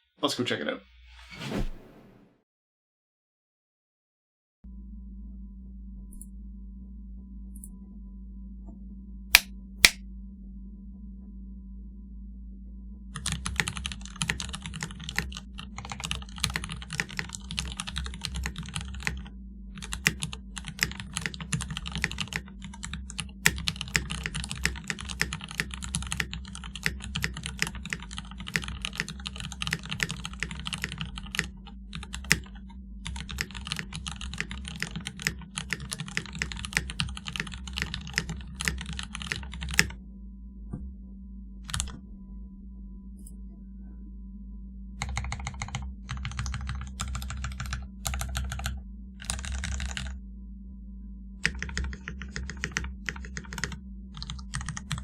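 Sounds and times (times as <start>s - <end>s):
steady low hum: 4.7s - 55.0s
typing on mechanical keyboard: 13.2s - 39.9s, 41.7s - 42.0s, 45.0s - 50.2s, 51.4s - 55.0s.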